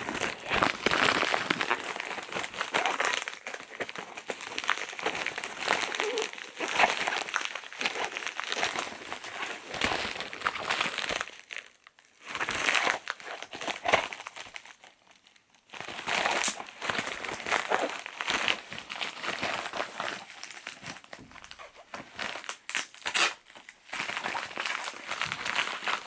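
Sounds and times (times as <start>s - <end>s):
packaging crinkling and rustling: 0.0s - 26.0s.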